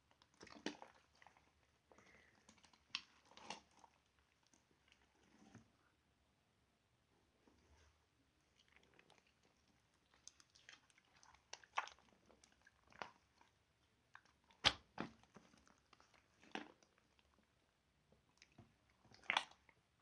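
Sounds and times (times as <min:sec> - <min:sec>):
slime squeezed with wet crackles: 0:00.0 - 0:05.2, 0:08.5 - 0:17.4, 0:18.2 - 0:19.8.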